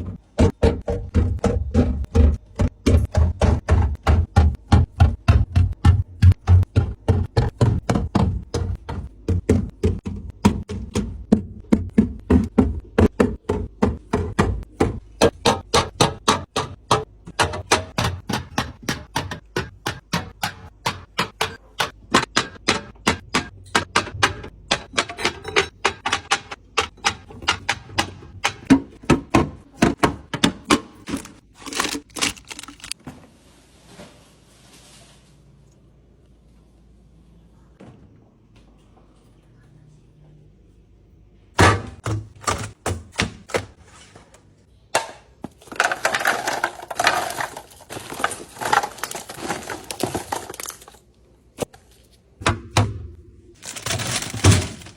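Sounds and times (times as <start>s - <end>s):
hard objects knocking: 0.0s - 32.1s.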